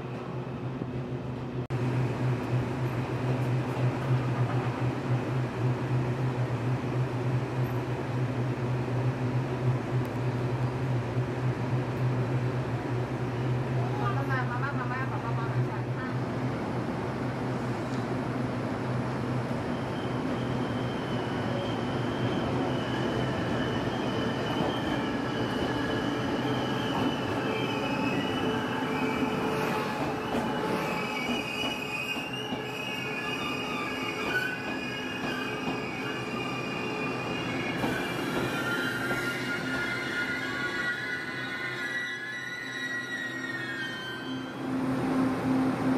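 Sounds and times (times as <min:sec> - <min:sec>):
rumble of train cars: 0:00.0 - 0:45.9
train wheels and brakes squealing: 0:19.4 - 0:44.9.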